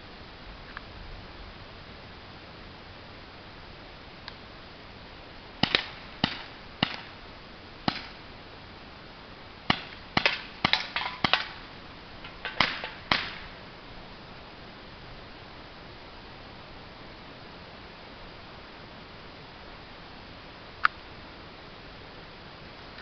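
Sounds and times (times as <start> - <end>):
air pistol shots: 5.6 - 7.2, 7.8 - 8.2, 9.7 - 11.6, 12.4 - 13.5.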